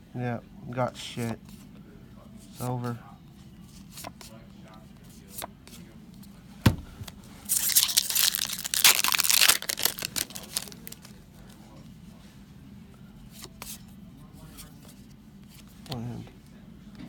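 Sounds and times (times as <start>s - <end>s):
foil wrapper tearing and crinkling: 7.5s - 11.1s.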